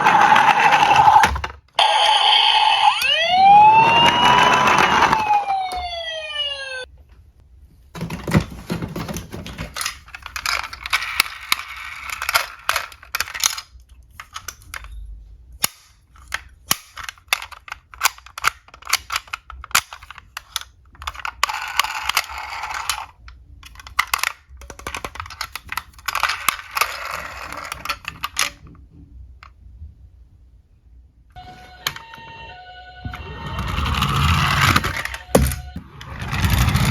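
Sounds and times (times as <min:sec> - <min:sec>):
toy car wheels rolling: 0:00.0 - 0:05.7, 0:09.2 - 0:14.6, 0:16.9 - 0:28.6, 0:33.2 - 0:36.9
toy cars clicking together: 0:09.6 - 0:14.9, 0:15.6 - 0:28.6.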